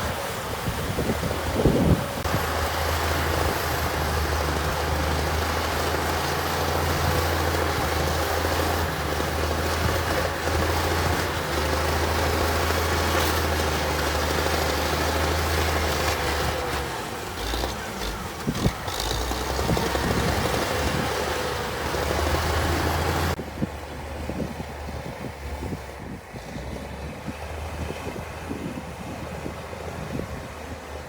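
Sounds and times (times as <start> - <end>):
diesel engine droning: 0.0 - 31.0.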